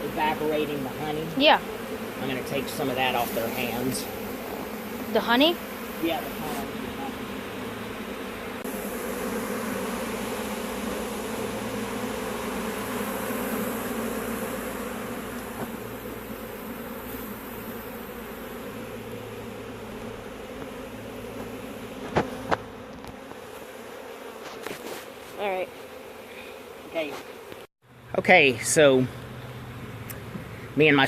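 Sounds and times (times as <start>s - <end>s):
bees buzzing: 0.0s - 31.0s.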